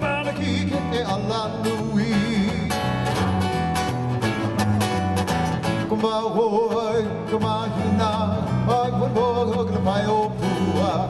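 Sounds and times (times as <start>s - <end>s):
acoustic guitar strumming: 0.0s - 11.0s.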